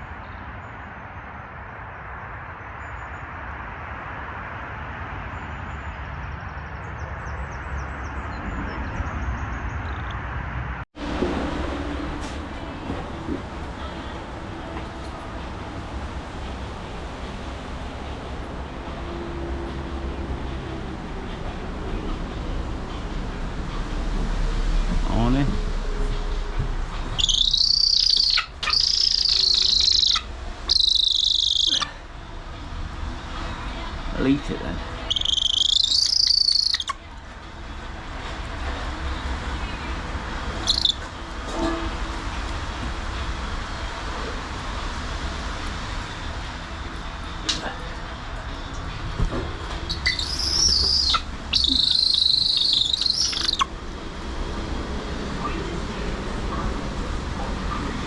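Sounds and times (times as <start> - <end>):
eagle screaming: 27.2 - 32.0, 35.1 - 36.9, 40.6 - 41.0, 49.9 - 53.7.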